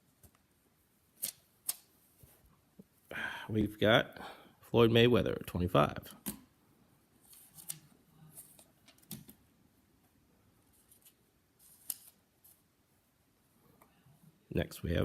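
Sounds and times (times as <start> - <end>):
cards sliding rustles: 7.2 - 9.4, 10.7 - 12.7.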